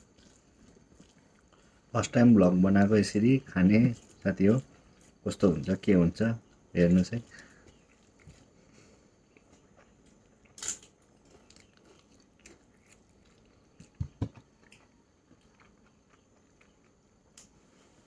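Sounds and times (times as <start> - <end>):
person chewing: 0.0 - 17.5
crunchy bite: 9.4 - 17.5.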